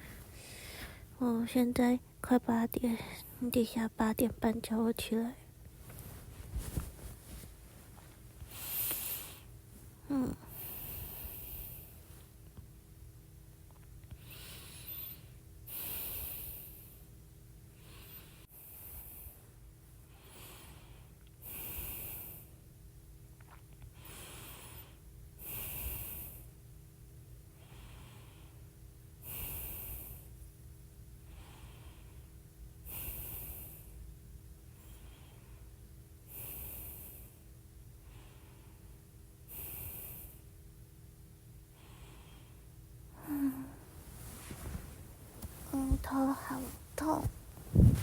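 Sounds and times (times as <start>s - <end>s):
woman's heavy sleep breathing: 0.0s - 1.2s, 6.0s - 12.0s, 14.2s - 17.0s, 41.8s - 48.0s
woman murmuring: 10.1s - 10.5s, 45.6s - 48.0s
light snoring: 43.2s - 48.0s.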